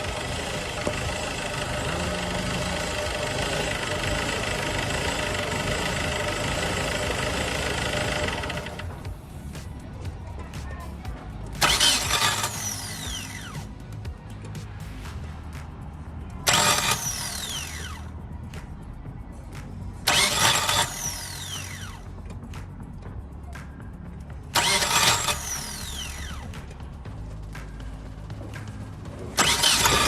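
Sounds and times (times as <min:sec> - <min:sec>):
car starter cranking: 0:00.0 - 0:09.1, 0:11.6 - 0:13.8, 0:16.4 - 0:18.1, 0:20.1 - 0:22.1, 0:24.5 - 0:26.6, 0:29.2 - 0:30.0
steady low hum: 0:00.0 - 0:30.0.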